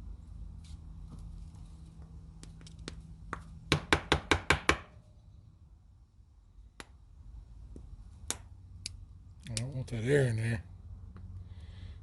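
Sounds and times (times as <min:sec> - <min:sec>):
sharp knocks of tapping: 0:02.4 - 0:04.9.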